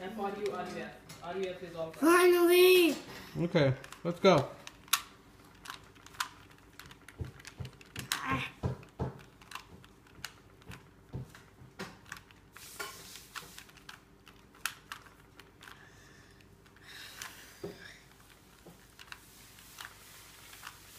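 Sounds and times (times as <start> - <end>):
puzzle cube clicking: 13.4 - 15.8.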